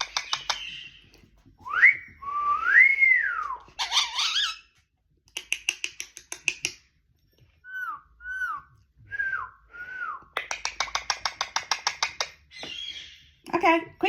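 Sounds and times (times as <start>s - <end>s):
parakeet clicky chatter: 0.0s - 0.8s, 5.3s - 6.9s, 10.4s - 12.7s
parakeet whistling: 3.8s - 4.6s, 7.6s - 8.7s.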